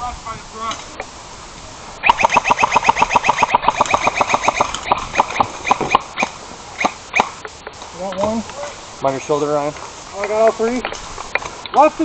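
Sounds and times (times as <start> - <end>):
airsoft gun firing: 2.0 - 7.3.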